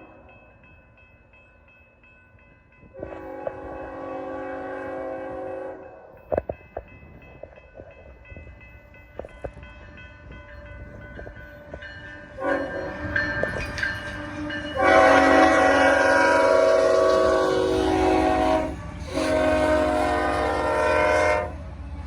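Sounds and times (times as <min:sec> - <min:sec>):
low train rumble: 0:00.0 - 0:22.0
train clicks and clanks: 0:00.0 - 0:22.0
locomotive horn chord: 0:03.0 - 0:06.0, 0:12.4 - 0:13.0, 0:14.8 - 0:21.6.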